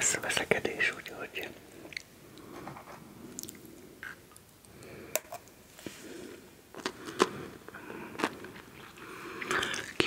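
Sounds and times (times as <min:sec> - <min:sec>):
crunchy snacks being eaten: 0:06.7 - 0:07.5, 0:08.1 - 0:10.0.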